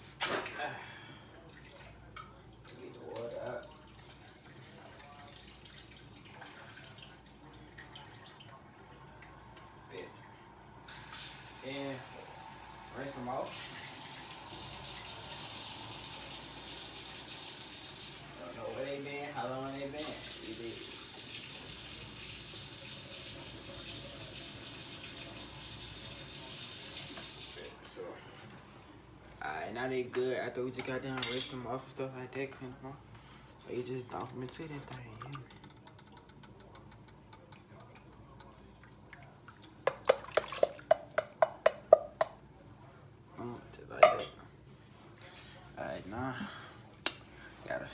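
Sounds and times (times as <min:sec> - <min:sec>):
kitchen tap running: 0:10.9 - 0:27.8, 0:39.6 - 0:42.4.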